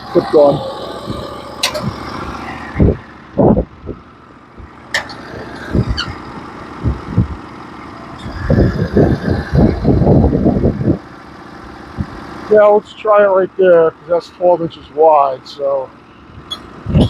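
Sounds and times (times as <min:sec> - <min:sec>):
engine idling: 0:00.0 - 0:17.0
wind thumping on microphone: 0:00.6 - 0:07.4, 0:08.2 - 0:11.0, 0:16.4 - 0:17.0.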